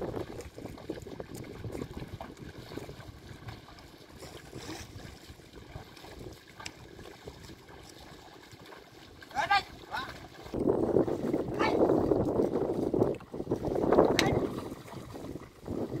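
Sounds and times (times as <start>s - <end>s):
muddy water sloshing and splashing: 0.0s - 16.0s.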